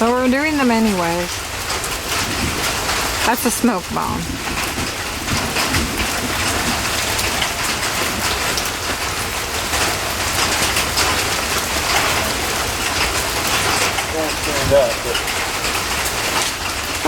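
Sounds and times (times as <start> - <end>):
rain falling: 0.0 - 17.0
raindrops ticking on surfaces: 0.0 - 17.0.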